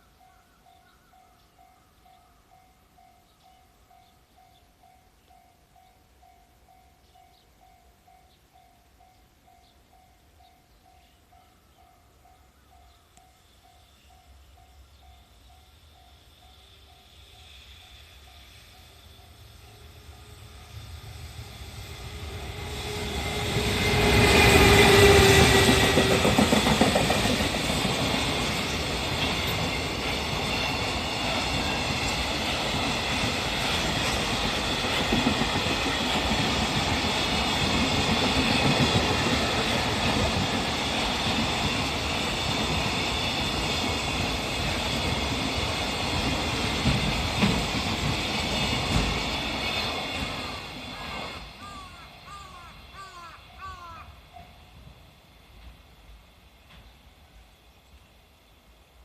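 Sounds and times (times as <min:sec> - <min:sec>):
electric locomotive passing: 0:00.0 - 0:59.0
freight wagons rumbling past: 0:18.0 - 0:52.9
wheels clacking over rail joints: 0:22.5 - 0:51.6.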